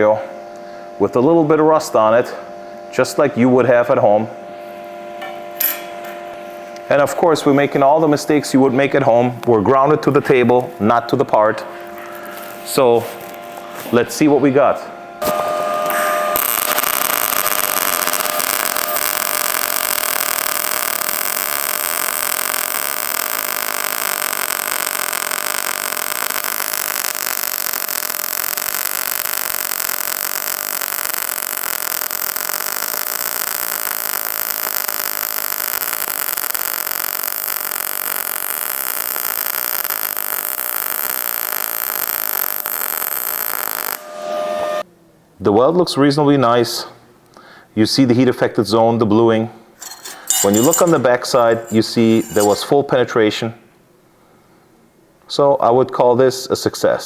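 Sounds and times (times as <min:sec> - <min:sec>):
welding arc: 0:15.2 - 0:44.8, 0:49.8 - 0:52.7.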